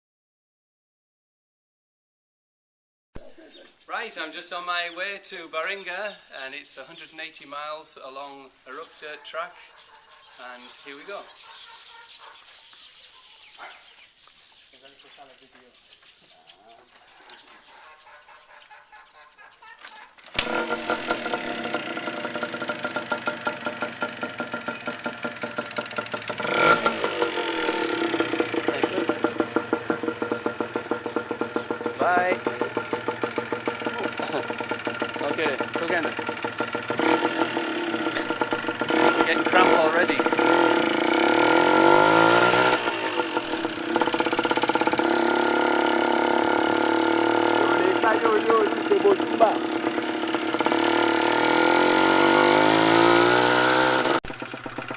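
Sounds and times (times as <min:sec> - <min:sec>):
motorbike engine running: 0:20.3 - 0:54.9.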